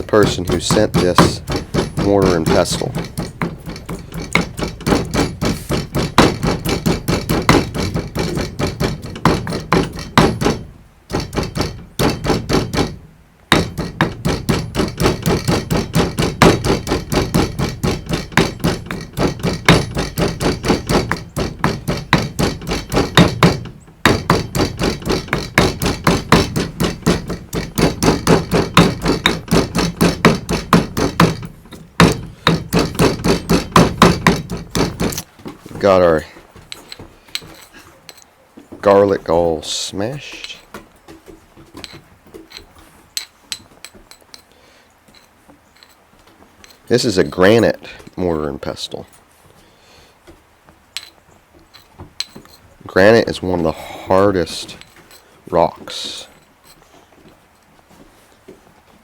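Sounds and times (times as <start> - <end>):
pestle pounding in stone mortar: 0.0 - 38.2.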